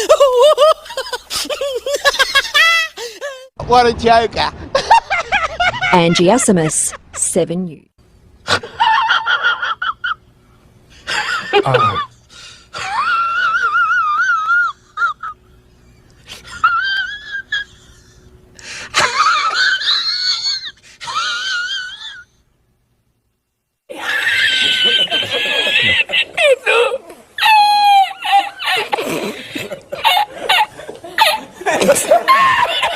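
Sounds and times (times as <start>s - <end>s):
high-pitched wheezing laugh: 0.0s - 3.5s, 11.0s - 12.1s, 12.7s - 15.4s, 16.2s - 22.3s, 23.9s - 32.9s.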